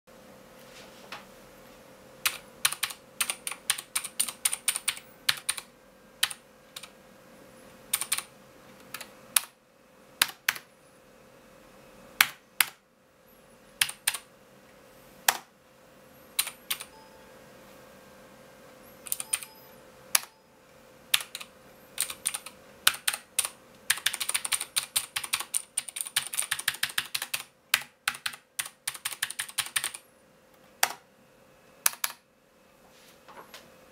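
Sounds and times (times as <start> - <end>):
clicky mechanical keyboard typing: 2.2 - 6.9, 7.9 - 9.6, 10.2 - 10.7, 13.8 - 14.3, 16.4 - 16.9, 19.0 - 19.6, 21.1 - 30.0, 31.8 - 32.2.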